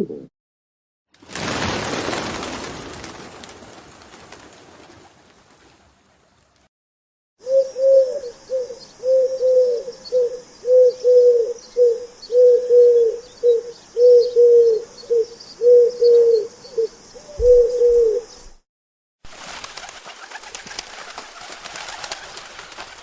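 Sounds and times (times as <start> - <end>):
pigeon cooing: 0.0 - 0.3, 7.4 - 18.4.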